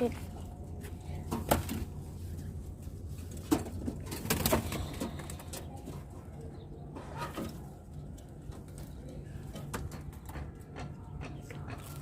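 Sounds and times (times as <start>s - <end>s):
sharp knocks and rattles: 3.3s - 5.6s, 9.5s - 12.0s.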